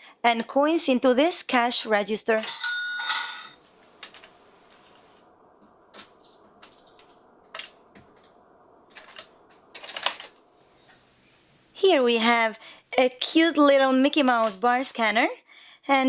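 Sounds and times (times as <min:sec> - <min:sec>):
toy coins clattering: 0:02.4 - 0:03.6.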